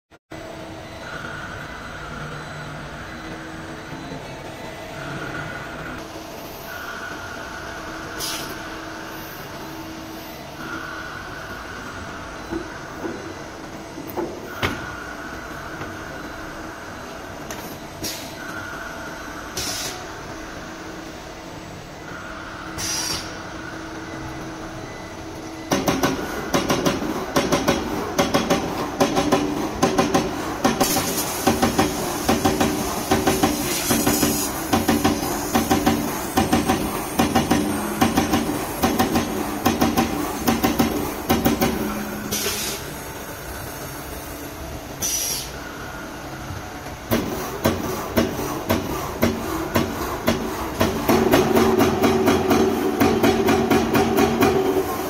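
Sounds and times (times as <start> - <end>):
machine running: 0.6 - 45.0
air hiss: 19.5 - 20.1, 22.7 - 23.4, 30.8 - 40.6, 42.0 - 46.5.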